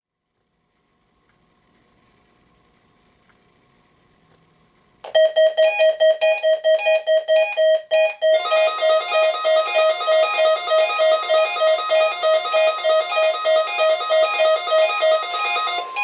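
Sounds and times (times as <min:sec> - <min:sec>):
loud pulsing fire alarm: 0:05.2 - 0:16.0
higher-pitched pulsing alarm: 0:08.2 - 0:16.0.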